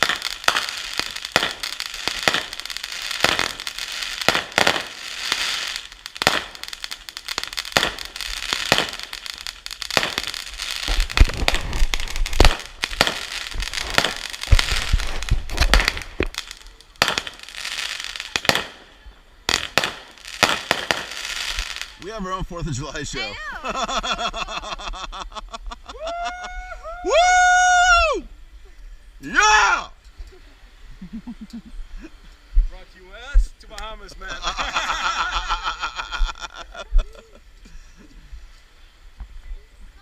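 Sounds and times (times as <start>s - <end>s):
fireworks banging and crackling: 0.0s - 25.8s
deep firework booms: 9.9s - 17.4s.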